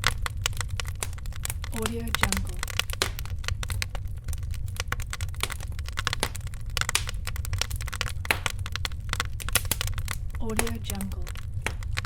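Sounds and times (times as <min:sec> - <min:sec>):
fireplace fire crackling: 0:00.0 - 0:12.0.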